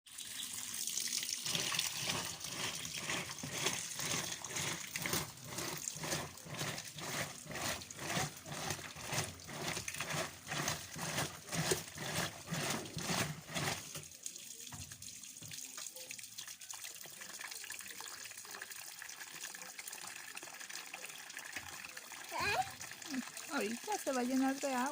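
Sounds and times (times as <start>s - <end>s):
washing machine agitator swishing: 1.4s - 14.1s
steady hiss of water: 21.7s - 24.9s.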